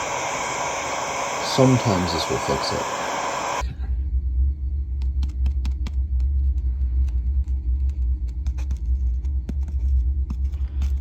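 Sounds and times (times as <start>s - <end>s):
loudspeaker hum: 0.0s - 3.6s.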